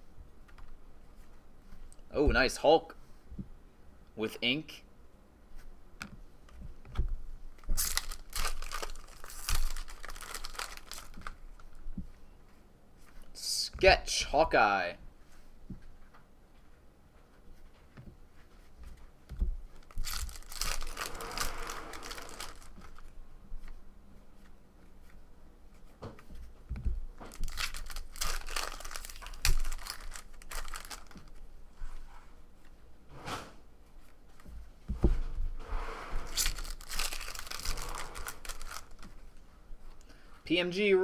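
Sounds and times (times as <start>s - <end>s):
wrappers being torn and crinkled: 7.6s - 11.8s, 19.8s - 23.2s, 27.2s - 31.4s, 36.3s - 39.2s.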